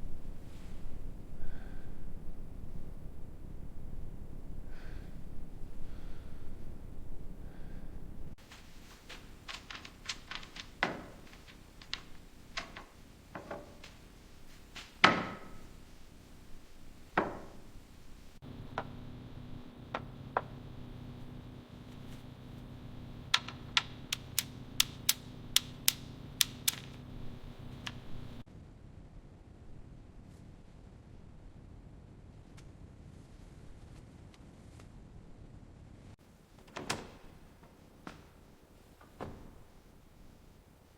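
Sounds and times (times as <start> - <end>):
low steady hum: 0.0 - 40.9
sharp clicks: 8.8 - 14.0, 23.3 - 28.4.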